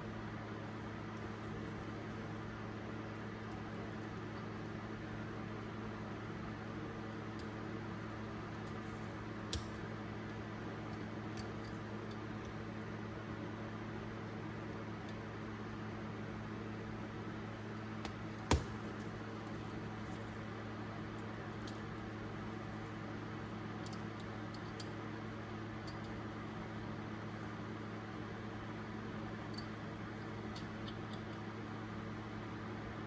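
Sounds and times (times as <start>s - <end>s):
steady low hum: 0.0s - 24.7s.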